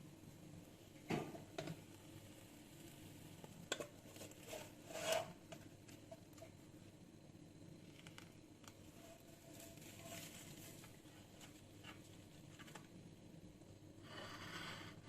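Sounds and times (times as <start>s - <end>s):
utensil scraping: 3.7s - 5.6s.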